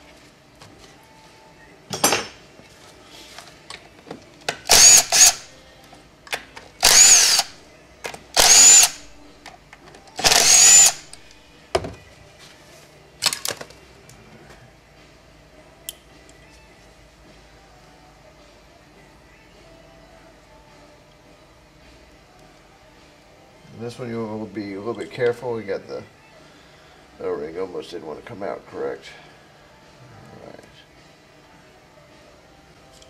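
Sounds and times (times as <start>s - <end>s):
power driver whining: 4.7s - 5.5s, 6.8s - 7.6s, 8.4s - 9.1s, 10.2s - 11.3s.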